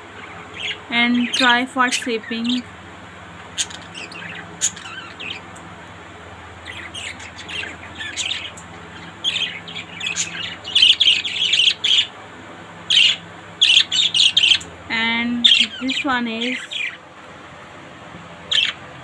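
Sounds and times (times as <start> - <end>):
budgerigars chirping: 0.2 - 2.7, 3.5 - 5.6, 6.6 - 12.2, 12.9 - 17.0, 18.4 - 18.9.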